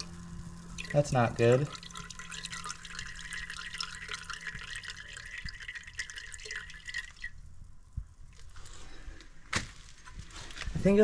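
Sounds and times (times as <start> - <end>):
coolant trickling into container: 0.0 - 7.6.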